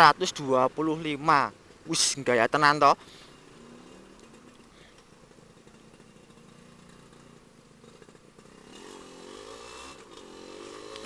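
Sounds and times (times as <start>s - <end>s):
faint two-stroke motorcycle engine: 0.0s - 11.0s.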